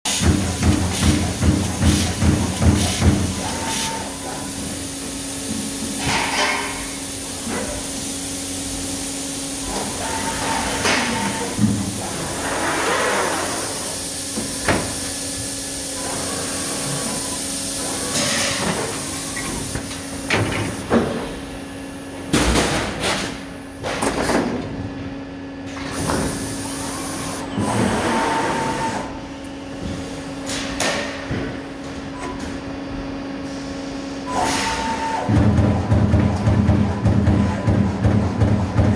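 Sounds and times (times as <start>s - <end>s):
machine knocks and clunks: 0.1s - 3.5s, 35.3s - 38.9s
punch press humming: 34.3s - 38.9s.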